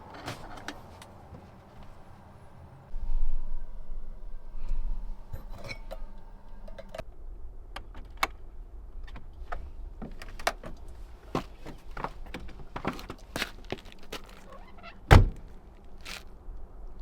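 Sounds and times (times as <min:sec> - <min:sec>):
steady hum: 0:02.8 - 0:07.7.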